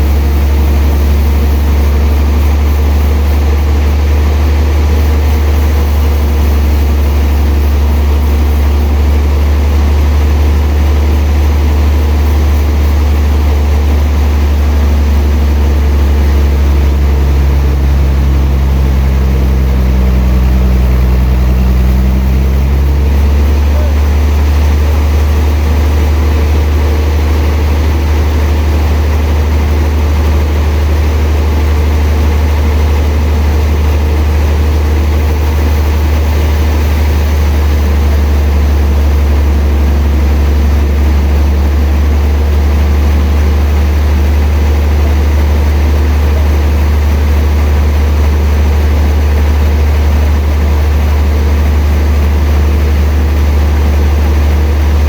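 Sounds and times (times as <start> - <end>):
sawmill machinery humming: 0.0 - 55.0.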